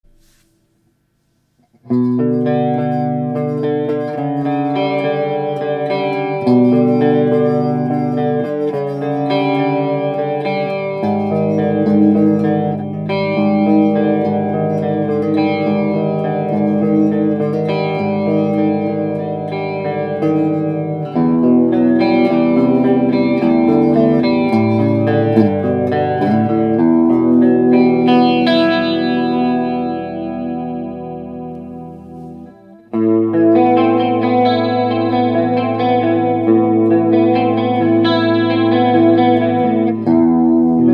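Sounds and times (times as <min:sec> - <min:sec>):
electric guitar chords with chorus: 0:01.7 - 0:40.9.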